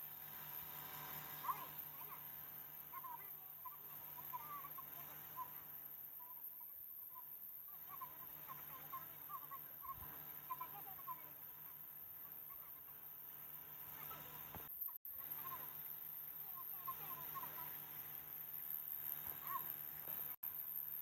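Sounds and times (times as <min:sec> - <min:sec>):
steady low hum: 0:00.0 - 0:21.0
faint bird chirping: 0:00.4 - 0:20.4.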